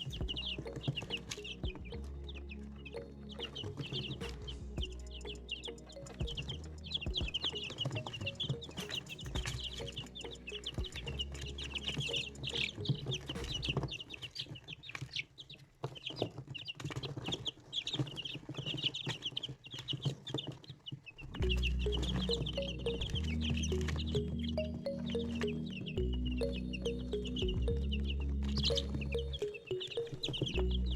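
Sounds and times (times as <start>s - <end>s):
young chickens peeping: 5.1s - 30.9s.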